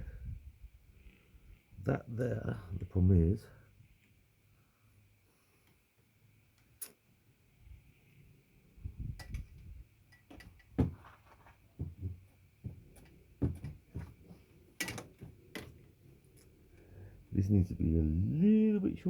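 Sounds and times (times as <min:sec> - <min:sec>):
bicycle parts clicking and knocking: 0:06.5 - 0:07.0, 0:09.1 - 0:11.7, 0:14.8 - 0:16.6.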